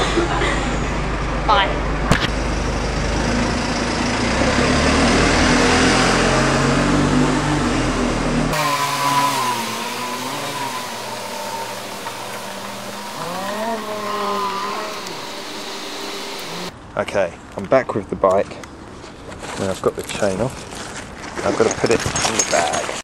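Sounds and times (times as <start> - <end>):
road noise: 0.0 - 16.9
bus engine accelerating: 2.4 - 16.7
wavering whine: 8.6 - 16.7.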